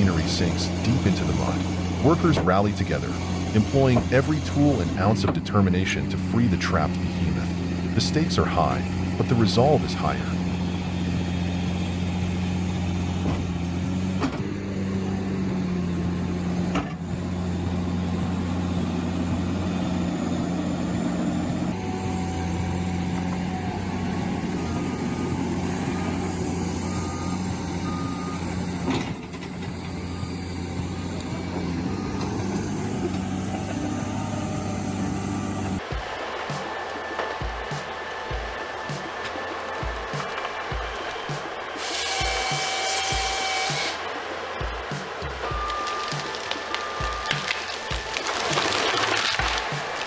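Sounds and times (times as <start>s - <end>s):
heavy machine engine running: 0.0s - 50.0s
reversing alarm beeping: 21.7s - 29.1s, 29.9s - 35.9s, 44.6s - 48.9s.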